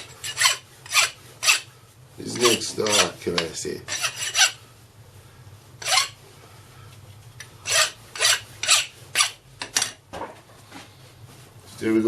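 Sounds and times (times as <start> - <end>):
low steady hum: 0.0 - 12.0
scraping metal chips: 5.8 - 6.2, 7.6 - 9.4.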